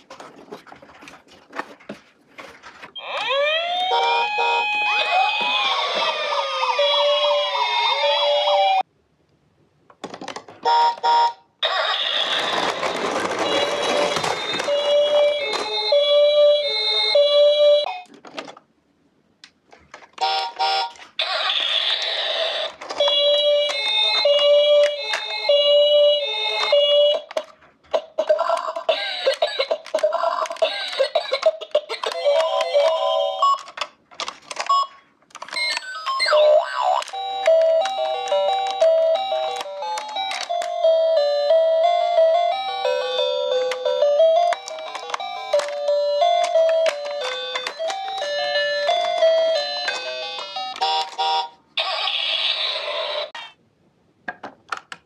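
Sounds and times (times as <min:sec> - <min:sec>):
toy ambulance sirens wailing: 0:03.0 - 0:08.8, 0:10.7 - 0:17.9, 0:20.2 - 0:27.4, 0:35.4 - 0:53.5.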